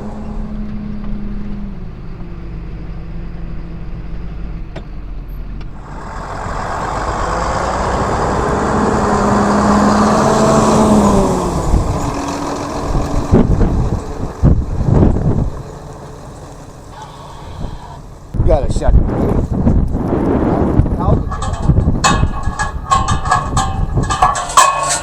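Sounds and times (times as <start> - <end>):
tractor engine revving: 0.0 - 25.0
wind buffeting microphone: 5.6 - 15.8, 17.5 - 25.0.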